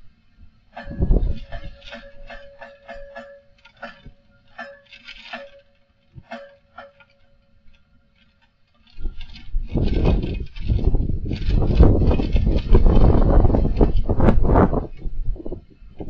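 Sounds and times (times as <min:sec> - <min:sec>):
faint steady ringing tone: 0:00.0 - 0:09.5
wind gust buffeting microphone: 0:00.8 - 0:03.2, 0:09.0 - 0:16.0
clicking and rattling: 0:00.8 - 0:15.1.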